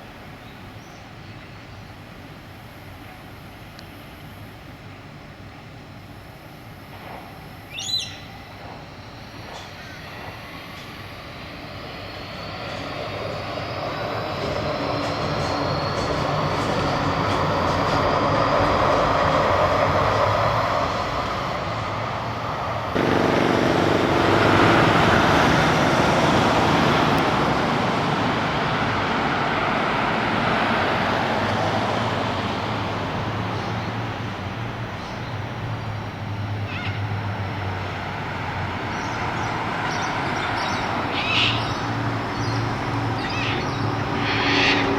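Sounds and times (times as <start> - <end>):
wheels rumbling on rail: 0.0 - 44.9
electric motors whining: 23.0 - 27.3
low hum tones: 23.0 - 28.6
birds chirping: 38.9 - 44.9.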